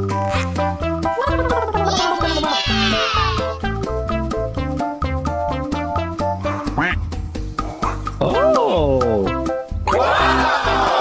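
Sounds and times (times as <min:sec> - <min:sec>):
upbeat children's music: 0:00.0 - 0:11.0.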